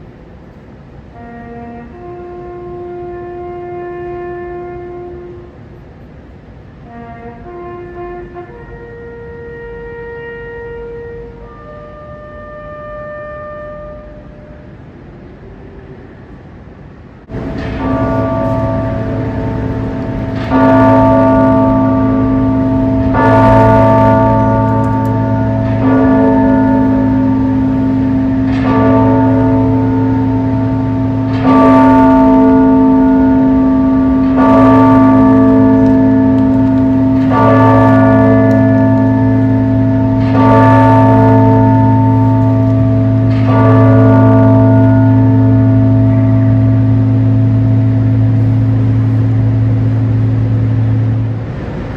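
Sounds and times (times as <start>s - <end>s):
large bell tolling: 17.2s - 51.9s.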